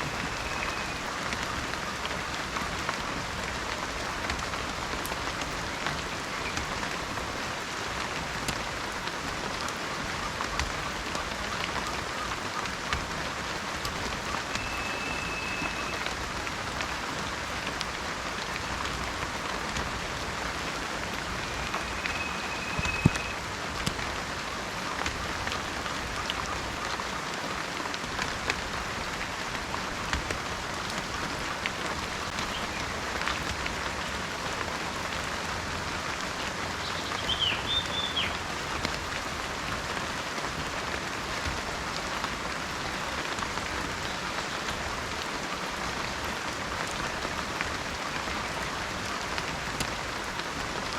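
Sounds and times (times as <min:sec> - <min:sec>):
heavy rain falling: 0:00.0 - 0:50.9
bird chirps: 0:00.1 - 0:01.0, 0:14.6 - 0:16.0, 0:21.6 - 0:23.4, 0:36.8 - 0:38.4
bird whistle: 0:00.1 - 0:01.1, 0:14.6 - 0:16.0, 0:21.5 - 0:23.4, 0:37.1 - 0:38.4.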